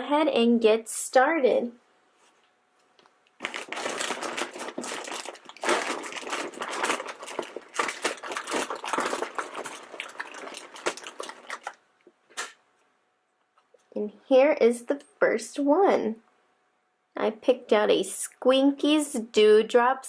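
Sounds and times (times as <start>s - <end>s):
plastic packets crinkling: 3.4s - 12.6s.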